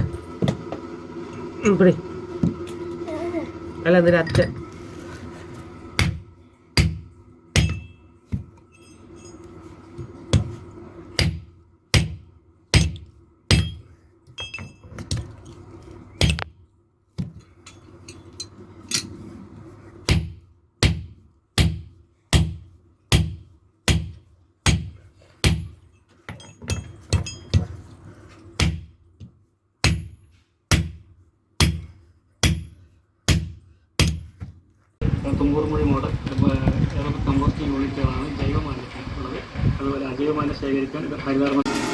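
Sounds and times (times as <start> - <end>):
hammer striking steel on anvil: 6.0 - 6.2, 6.8 - 9.0, 11.2 - 13.8, 29.8 - 31.0, 31.6 - 34.3
low hum: 35.0 - 41.8.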